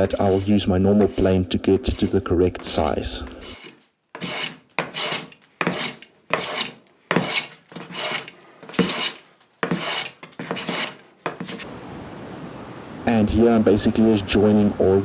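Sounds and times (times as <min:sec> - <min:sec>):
hand plane shaving a board: 0:00.0 - 0:02.2, 0:03.4 - 0:11.6.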